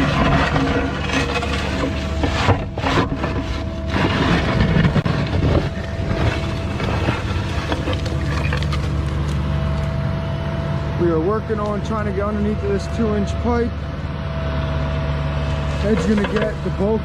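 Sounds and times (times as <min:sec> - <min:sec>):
bucket scraping through dirt: 0:00.0 - 0:09.3, 0:15.4 - 0:16.9
excavator diesel engine running: 0:00.0 - 0:17.0
steady whining tone: 0:00.0 - 0:17.0.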